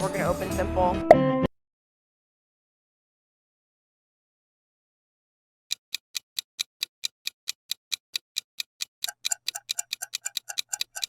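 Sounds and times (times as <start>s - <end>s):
clock ticking: 5.7s - 11.0s.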